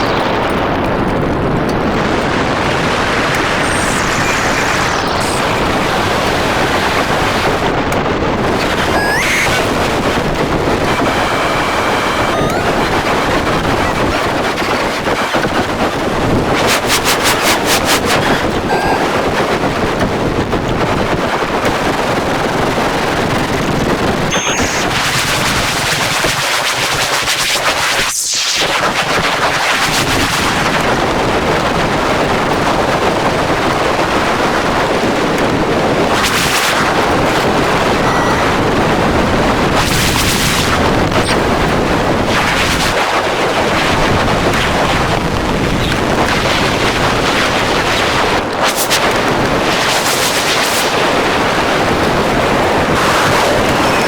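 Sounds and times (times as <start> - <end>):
distorted static noise music: 2.0 - 7.8, 8.5 - 19.5, 24.3 - 26.4
stuttering pulses: 3.0 - 7.3, 8.5 - 15.4.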